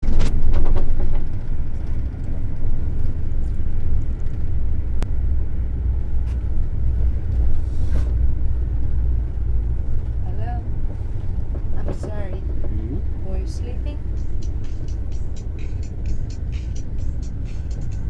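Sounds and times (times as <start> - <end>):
train rumbling: 0.0 - 18.0.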